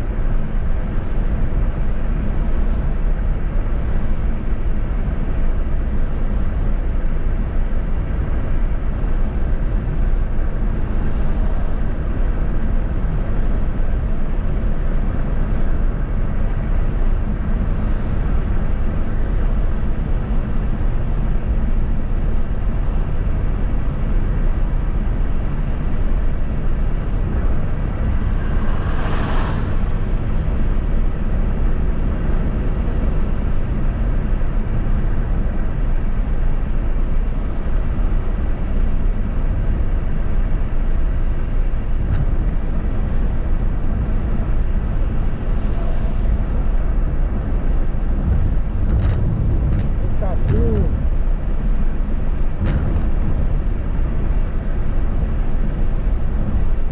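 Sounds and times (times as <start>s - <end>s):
vehicle road and engine noise: 0.0s - 56.9s
rushing noise: 27.2s - 31.3s, 45.4s - 55.2s.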